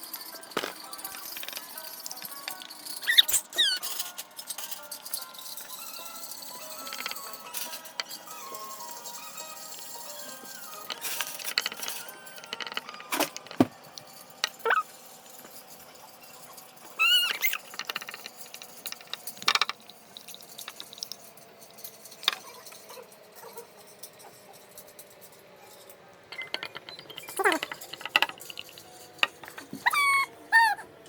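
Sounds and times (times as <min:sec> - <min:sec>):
baby squealing: 0:03.0 - 0:03.9, 0:14.6 - 0:14.8, 0:17.0 - 0:17.6, 0:29.8 - 0:30.9.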